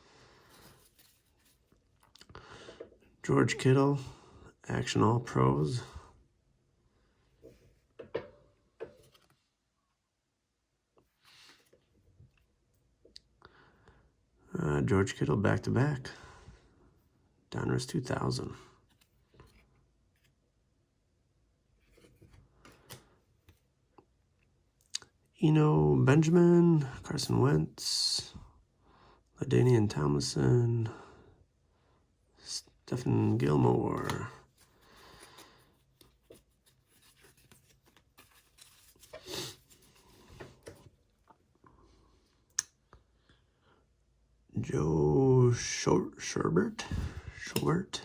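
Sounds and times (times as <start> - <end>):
cards rubbing and rustling: 34.0 - 40.9.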